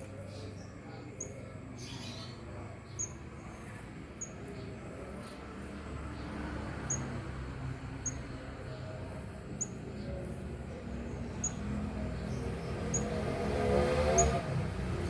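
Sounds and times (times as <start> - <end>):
bird high chirps: 6.9 - 7.1, 11.3 - 13.2.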